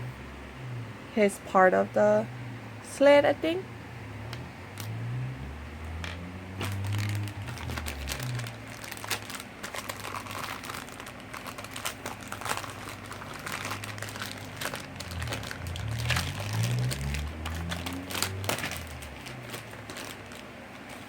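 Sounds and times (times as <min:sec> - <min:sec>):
plastic packaging crinkling: 0:06.6 - 0:21.0.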